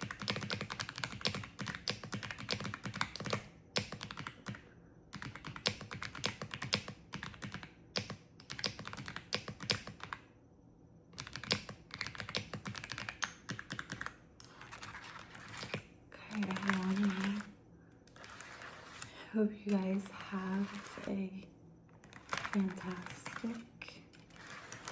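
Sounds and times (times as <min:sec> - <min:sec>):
fast typing on clicky keyboard: 0:00.0 - 0:10.2, 0:11.2 - 0:17.5, 0:18.1 - 0:21.1, 0:22.0 - 0:24.9.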